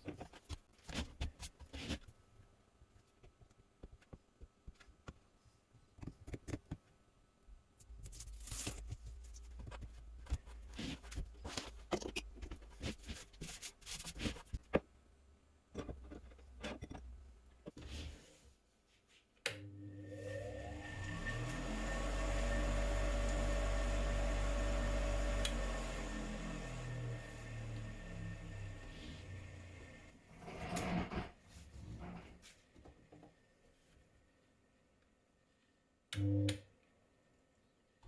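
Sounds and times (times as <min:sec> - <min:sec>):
clicks scrapes and rubbing: 0:00.0 - 0:02.2, 0:07.8 - 0:14.8
electric motor spinning up: 0:20.2 - 0:30.1.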